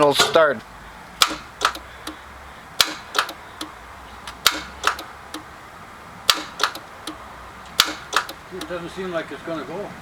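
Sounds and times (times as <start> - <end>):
starter clicking: 0.0 - 2.2, 2.8 - 5.5, 6.3 - 8.9.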